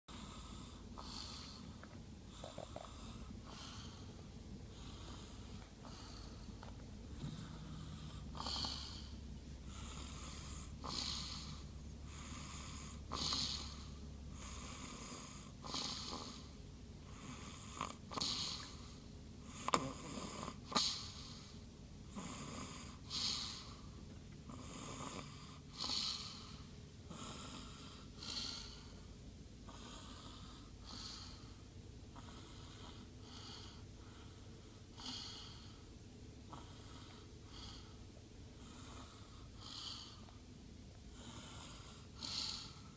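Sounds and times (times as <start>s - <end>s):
person snoring: 7.1s - 21.5s, 22.1s - 23.9s, 24.5s - 29.0s, 41.1s - 42.9s.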